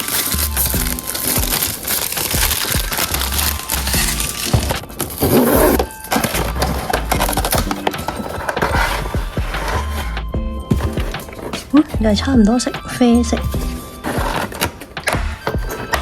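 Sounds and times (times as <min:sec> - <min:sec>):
plastic wrap crinkling and tearing: 0:00.0 - 0:10.1
background music with bass line: 0:00.0 - 0:16.0.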